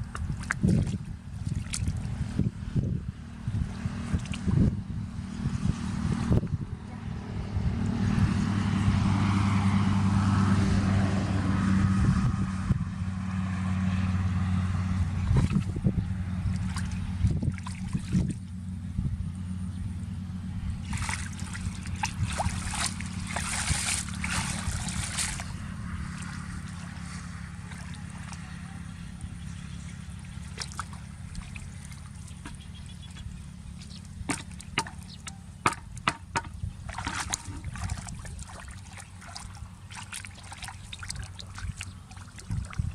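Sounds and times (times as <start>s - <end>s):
water splashing and trickling: 0.0s - 2.4s, 3.6s - 4.6s, 14.8s - 18.6s, 20.8s - 42.9s
engine humming: 0.0s - 42.9s.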